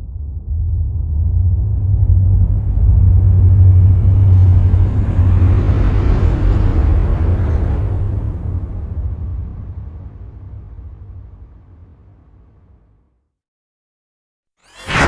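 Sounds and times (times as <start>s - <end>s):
deep rumble: 0.0s - 12.7s
whoosh transition effect: 14.6s - 15.0s.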